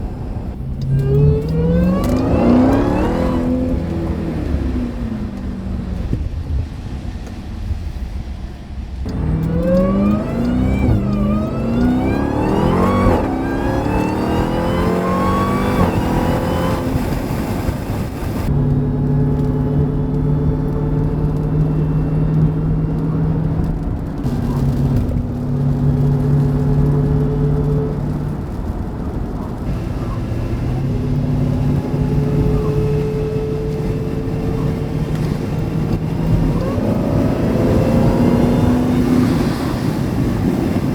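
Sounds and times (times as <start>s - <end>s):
car engine accelerating: 0.0s - 40.9s
supercharger whine: 0.0s - 40.9s.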